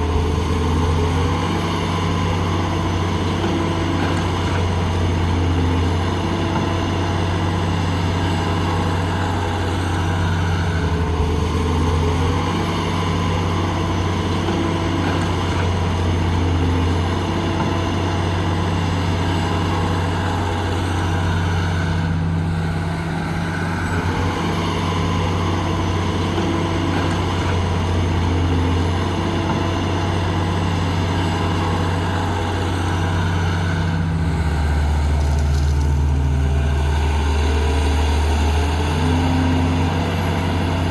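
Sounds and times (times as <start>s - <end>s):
excavator diesel engine working: 0.0s - 40.9s.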